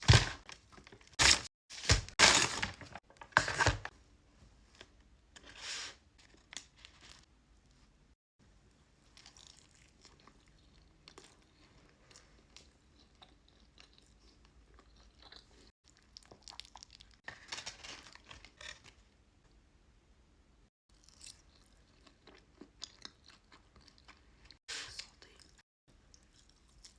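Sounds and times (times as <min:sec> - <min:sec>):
paper wrapping rustling and tearing: 0:00.0 - 0:03.9, 0:17.3 - 0:19.0.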